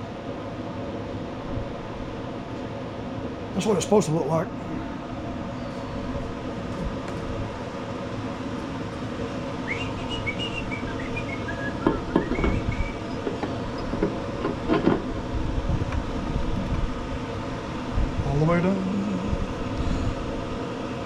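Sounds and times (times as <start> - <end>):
fan humming: 0.0 - 21.0
person whistling: 9.7 - 13.0
hand tools knocking on metal: 11.8 - 15.0.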